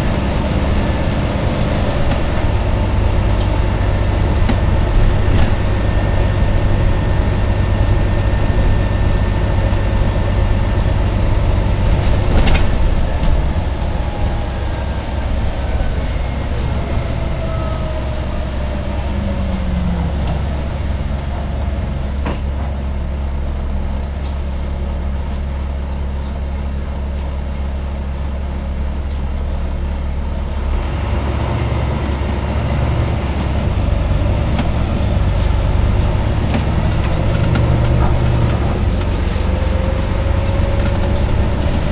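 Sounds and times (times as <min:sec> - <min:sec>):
bus engine low hum: 0:00.0 - 0:41.9
whines gliding down in pitch: 0:13.8 - 0:21.0.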